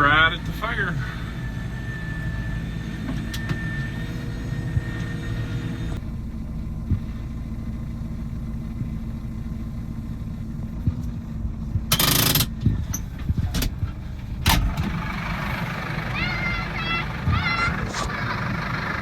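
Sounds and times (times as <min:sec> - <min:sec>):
excavator diesel engine rumbling: 0:00.0 - 0:19.0.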